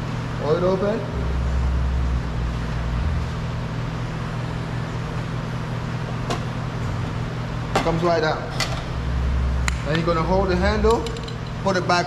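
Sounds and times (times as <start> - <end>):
low mechanical hum: 0.0 - 12.0
deep rumble: 1.0 - 5.6, 8.8 - 11.4.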